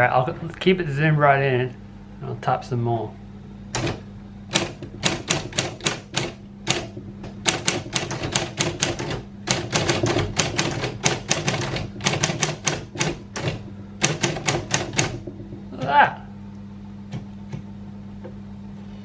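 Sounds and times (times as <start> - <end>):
typewriter motor hum: 3.7 - 15.8
typewriter key strikes: 3.8 - 15.3.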